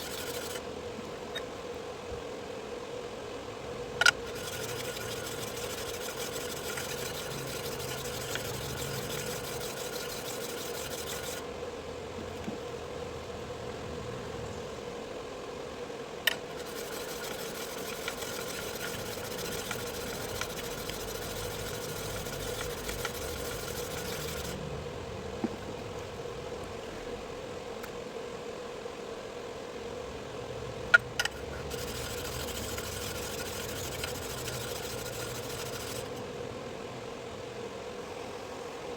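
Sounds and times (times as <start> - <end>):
sharpening machine motor humming: 0.0 - 0.6, 4.1 - 11.4, 16.3 - 24.6, 31.0 - 36.2.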